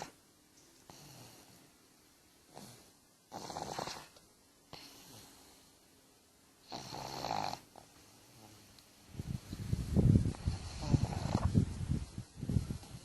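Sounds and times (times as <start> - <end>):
dog snoring: 0.9 - 1.6, 2.5 - 5.6, 6.6 - 8.7, 10.3 - 11.5.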